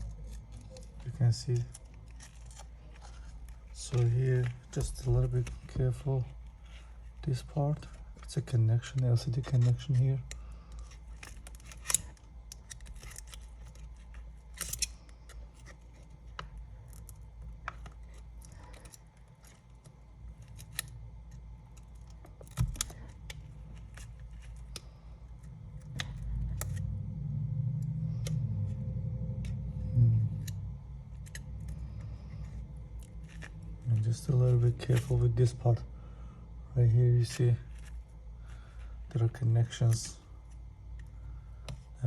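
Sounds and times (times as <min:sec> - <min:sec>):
steady low hum: 0:00.0 - 0:42.0
low rumble: 0:22.6 - 0:37.1.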